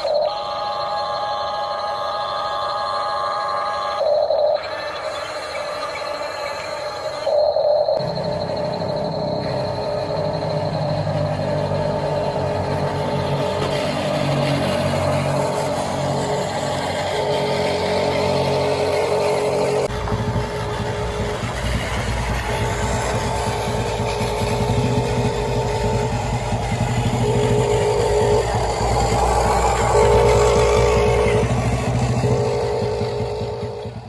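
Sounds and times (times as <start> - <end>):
small electric motors whining: 0.0 - 34.0
steady low hum: 8.0 - 34.0.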